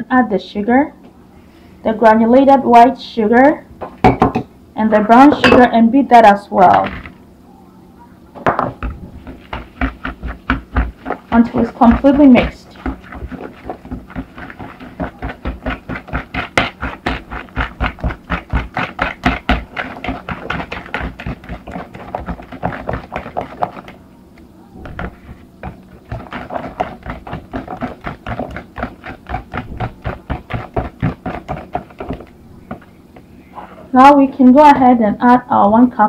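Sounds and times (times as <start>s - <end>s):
whisk clicking against bowl: 9.4s - 24.0s, 25.6s - 32.3s.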